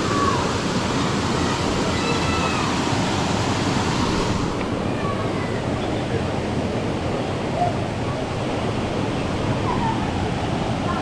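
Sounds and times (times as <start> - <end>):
water rushing over rocks: 0.0 - 11.0.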